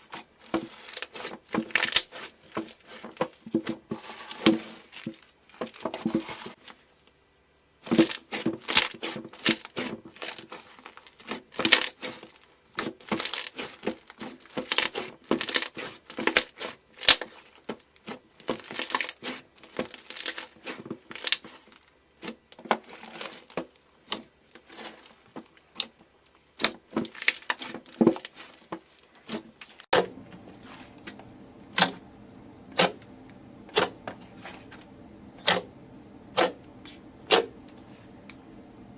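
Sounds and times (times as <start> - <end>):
crunchy things crushed by hand: 0.0 - 6.7, 7.8 - 31.1
low steady hum: 29.9 - 38.9.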